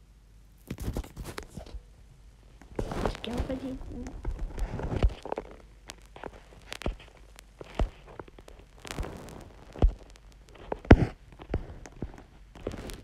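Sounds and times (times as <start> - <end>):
footsteps: 2.7 - 13.0.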